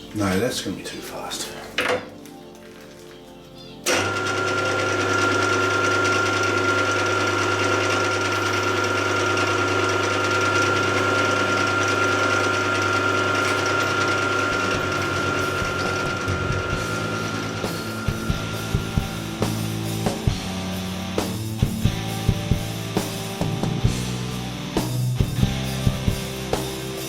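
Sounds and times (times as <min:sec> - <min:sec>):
milling machine spindle running: 0:03.8 - 0:23.4
high constant whine: 0:08.0 - 0:27.0.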